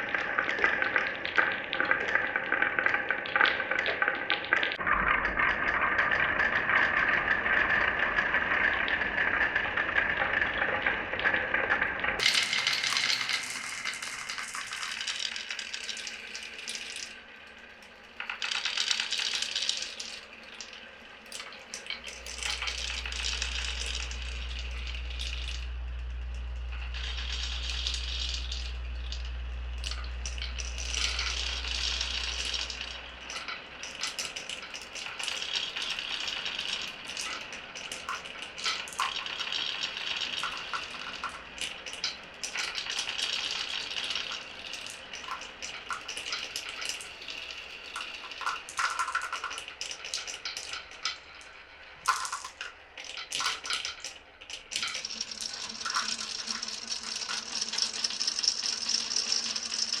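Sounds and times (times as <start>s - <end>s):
low hum: 21.9s - 34.0s.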